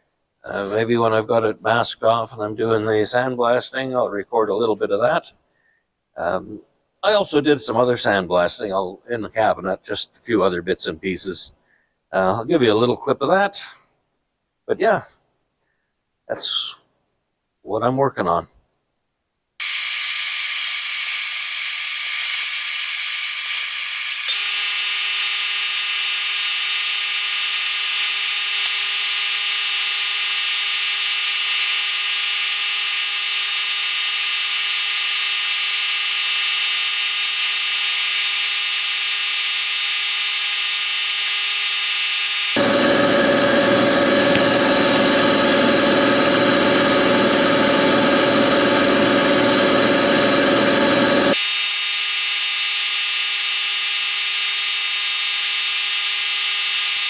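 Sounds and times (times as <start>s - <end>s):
sandblasting air hiss: 19.6s - 39.4s.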